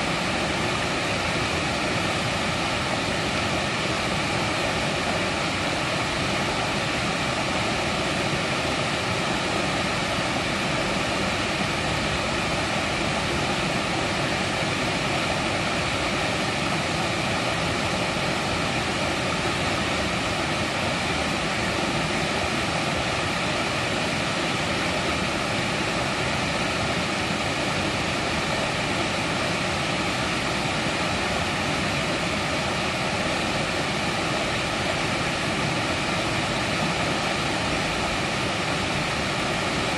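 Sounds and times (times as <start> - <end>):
stream water rushing: 0.0 - 39.9.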